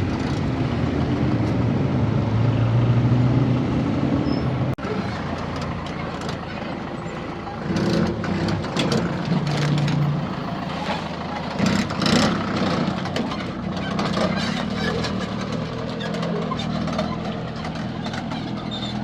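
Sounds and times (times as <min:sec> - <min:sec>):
vehicle engine running: 0:04.7 - 0:19.0
knocks and clatter: 0:11.4 - 0:19.0.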